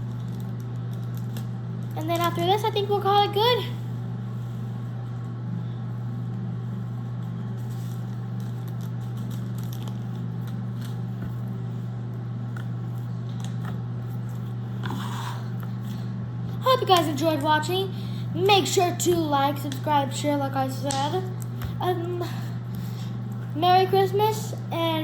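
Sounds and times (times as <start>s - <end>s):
steady low hum: 0.0s - 25.0s
slime crackling and squishing: 7.2s - 11.5s.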